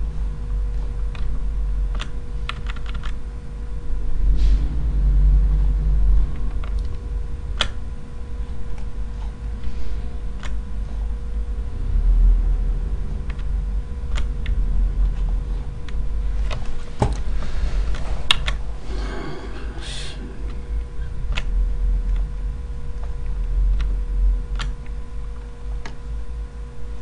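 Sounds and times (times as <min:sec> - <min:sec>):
steady low hum: 0:00.0 - 0:27.0
keyboard and mouse clicks: 0:01.9 - 0:03.2, 0:07.6 - 0:07.8, 0:10.4 - 0:10.6, 0:13.2 - 0:13.5, 0:14.1 - 0:14.6, 0:24.5 - 0:24.9.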